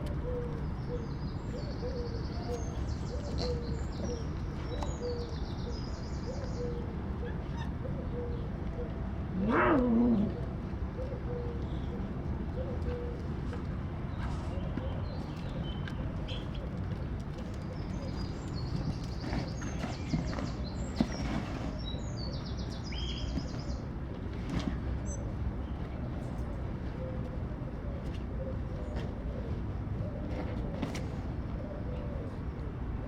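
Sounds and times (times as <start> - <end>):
small birds chirping: 0.3 - 8.5, 14.1 - 23.9.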